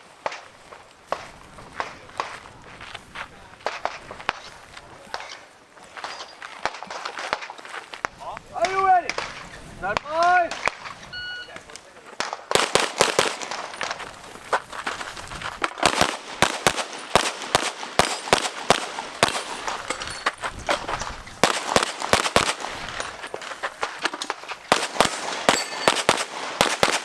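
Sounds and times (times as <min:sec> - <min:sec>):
rapid pistol gunfire: 0:12.2 - 0:14.0, 0:15.7 - 0:19.8, 0:21.4 - 0:23.1, 0:24.7 - 0:27.0.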